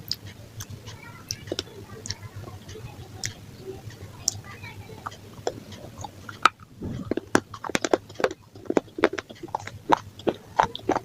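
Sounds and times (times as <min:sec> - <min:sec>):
person chewing crunchy pizza: 0:00.0 - 0:11.0.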